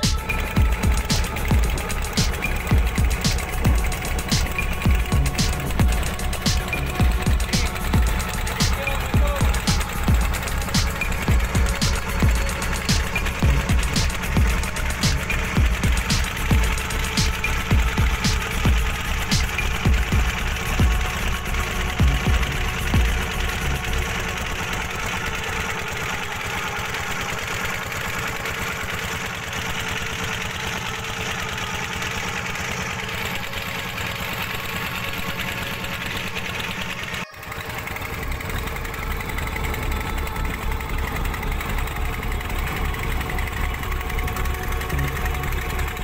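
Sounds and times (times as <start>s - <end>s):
boat engine rumbling: 0.0s - 46.0s.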